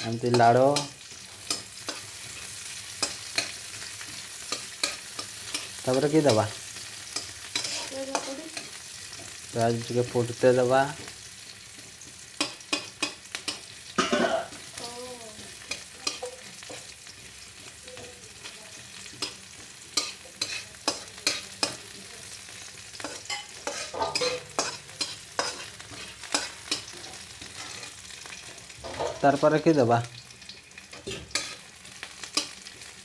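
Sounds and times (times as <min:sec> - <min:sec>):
spatula scraping and tapping pan: 0:00.0 - 0:09.4, 0:11.0 - 0:14.6, 0:15.6 - 0:17.0, 0:18.0 - 0:22.0, 0:22.9 - 0:29.4, 0:30.9 - 0:32.8
onions sizzling in oil: 0:00.0 - 0:33.0.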